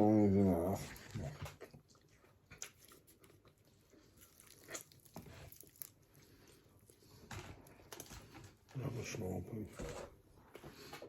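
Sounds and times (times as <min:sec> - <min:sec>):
food crunching and clicking: 0:00.8 - 0:08.8.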